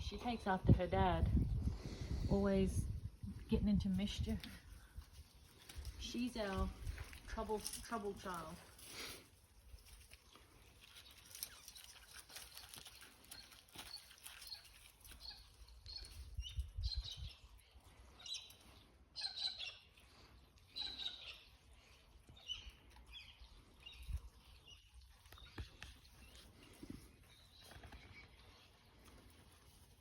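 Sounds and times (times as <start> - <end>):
wind rumbling on microphone: 0.0 - 5.2, 15.8 - 17.6
birds chirping: 12.4 - 29.3.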